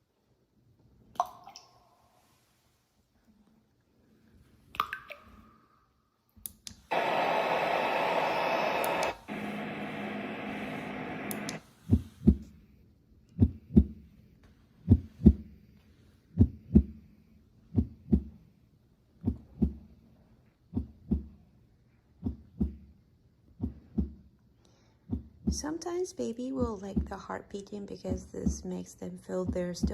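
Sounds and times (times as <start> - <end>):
steady white noise hiss: 6.9 - 13.1
recorded heartbeat double thump: 11.9 - 12.5, 13.4 - 14.1, 14.8 - 15.6, 16.4 - 17.0, 17.7 - 18.4, 19.2 - 19.9, 20.7 - 21.4, 22.2 - 22.9, 23.6 - 24.3, 25.0 - 25.7, 26.6 - 27.2, 28.1 - 28.8, 29.4 - 29.9.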